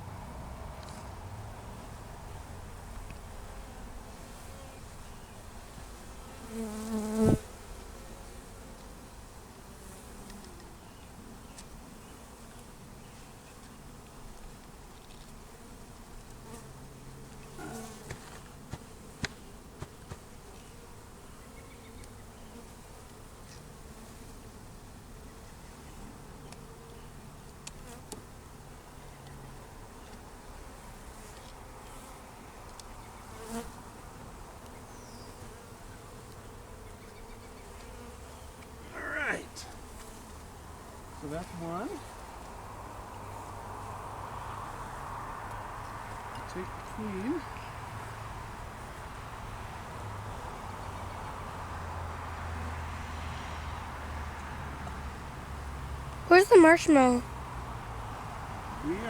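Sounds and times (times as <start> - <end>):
bees buzzing: 5.9 - 8.7, 56.3 - 57.2.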